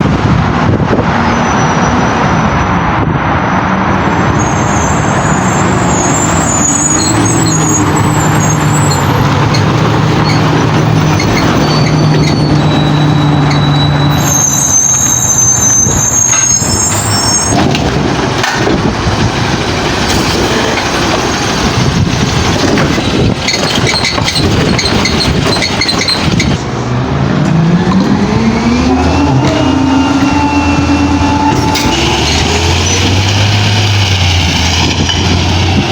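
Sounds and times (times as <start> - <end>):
wind buffeting microphone: 0.0 - 4.4, 15.3 - 35.9
diesel truck engine running: 2.0 - 35.9.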